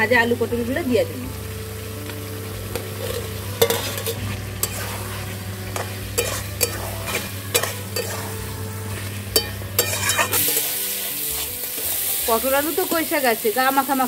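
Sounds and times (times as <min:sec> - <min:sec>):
food sizzling in a pan: 0:00.0 - 0:14.0
spoon scraping a pan: 0:02.7 - 0:13.1.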